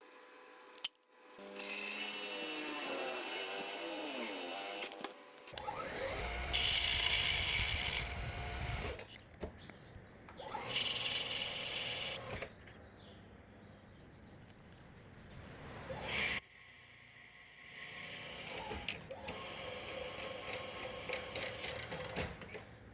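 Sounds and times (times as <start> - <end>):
power tool motor whining: 1.2 - 9.2, 10.4 - 12.6, 17.6 - 22.7.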